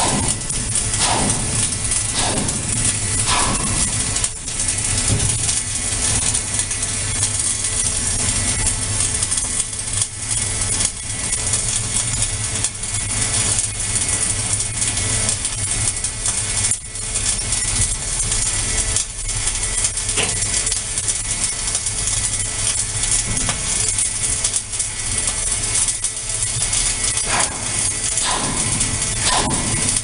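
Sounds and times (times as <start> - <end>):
low hum: 0.0 - 10.1
welding arc crackling: 0.0 - 30.0.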